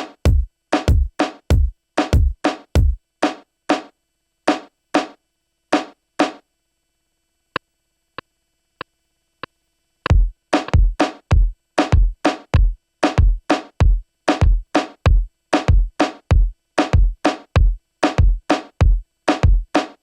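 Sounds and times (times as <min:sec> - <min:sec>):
drum machine pattern: 0:00.0 - 0:03.9, 0:10.1 - 0:20.0.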